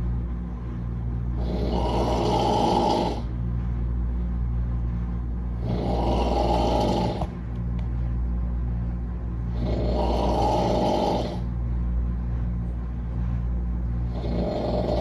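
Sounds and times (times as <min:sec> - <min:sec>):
steady low hum: 0:00.0 - 0:15.0
man snoring: 0:01.4 - 0:03.3, 0:05.6 - 0:07.4, 0:09.5 - 0:11.5, 0:14.1 - 0:15.0.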